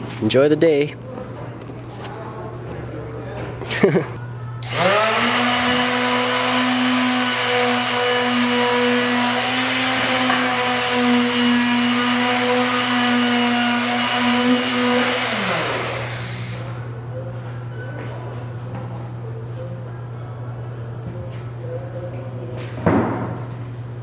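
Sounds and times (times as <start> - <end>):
electric sander motor: 4.6 - 16.7.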